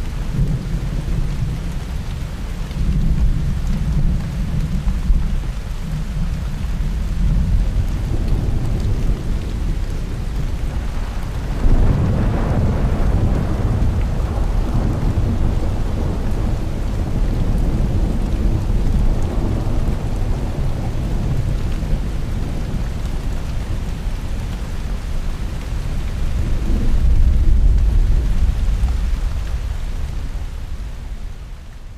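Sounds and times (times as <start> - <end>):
steady rain: 0.0 - 31.9
deep rolling thunder: 6.8 - 23.7, 26.0 - 31.1.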